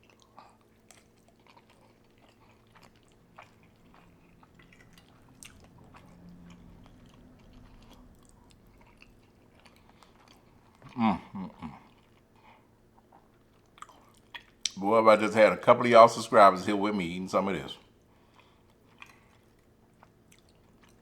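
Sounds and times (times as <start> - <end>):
close-up chewing: 0.0 - 15.8, 17.4 - 21.0
wet mouth clicks and smacks: 13.8 - 14.8.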